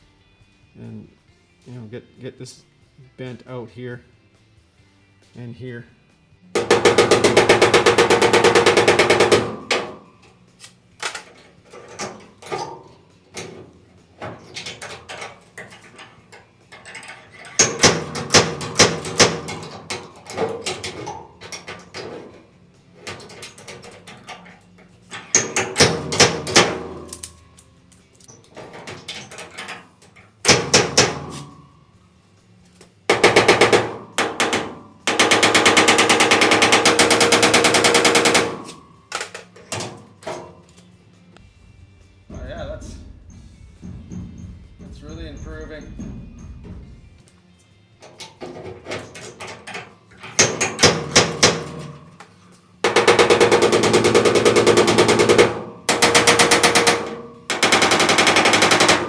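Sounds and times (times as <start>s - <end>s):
hammering on sheet metal: 6.6s - 10.2s, 17.3s - 24.3s, 25.2s - 27.4s, 28.6s - 31.8s, 33.1s - 40.6s, 41.6s - 47.3s, 48.4s - 52.2s, 52.8s - 59.0s.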